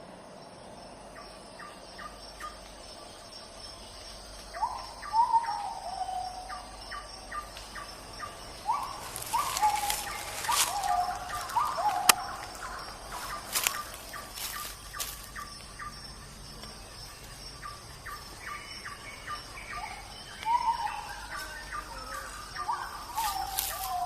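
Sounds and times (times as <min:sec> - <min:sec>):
birds calling: 0:01.0 - 0:24.0
quick bird chirps: 0:08.7 - 0:15.5.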